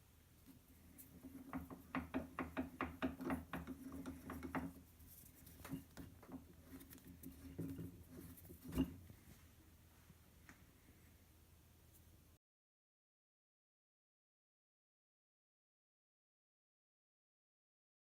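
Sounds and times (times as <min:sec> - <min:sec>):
faint steady hum: 0:00.0 - 0:12.4.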